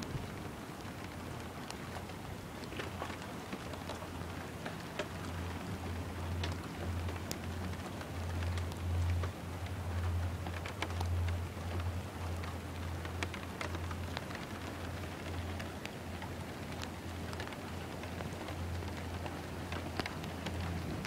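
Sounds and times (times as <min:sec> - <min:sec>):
small ticks: 0:01.4 - 0:21.0.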